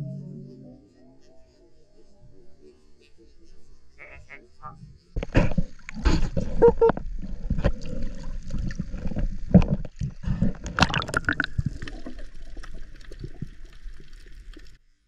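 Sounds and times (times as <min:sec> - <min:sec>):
water gurgling and splashing: 0:05.3 - 0:14.8.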